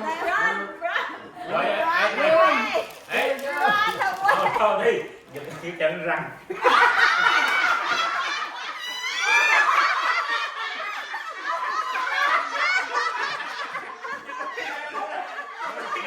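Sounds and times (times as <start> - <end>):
group of people laughing: 6.5 - 16.0.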